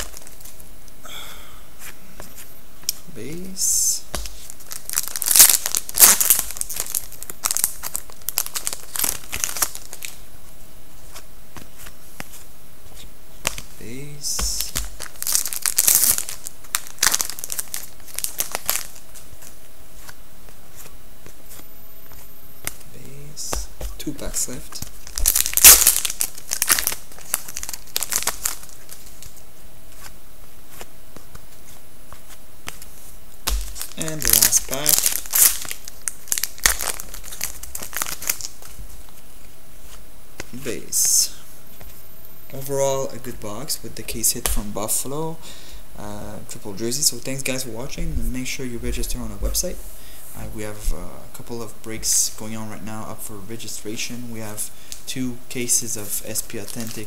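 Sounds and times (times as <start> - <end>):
card pack wrapper crinkling and tearing: 0.0 - 0.5, 4.1 - 10.2, 14.4 - 19.6, 24.1 - 29.4, 33.4 - 38.8, 56.3 - 57.0.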